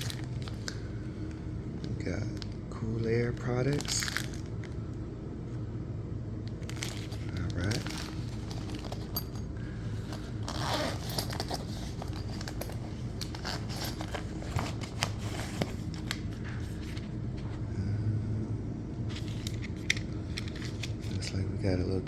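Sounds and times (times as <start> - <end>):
items rummaged in tool pouch: 0.0 - 2.5, 3.2 - 4.8, 6.5 - 17.1, 19.1 - 21.4
steady low hum: 0.0 - 22.0.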